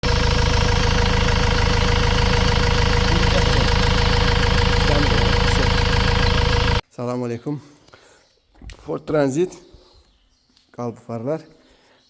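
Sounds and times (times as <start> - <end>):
diesel engine idling: 0.0 - 6.8.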